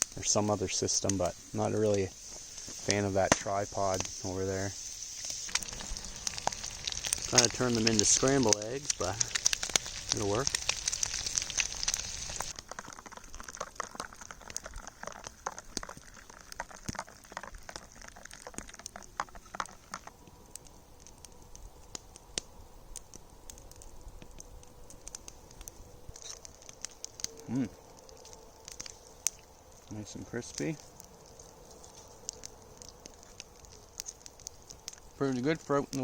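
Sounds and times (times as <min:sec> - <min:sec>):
food sizzling in a pan: 0:00.0 - 0:13.2
crackles and pops from campfire: 0:00.0 - 0:36.0.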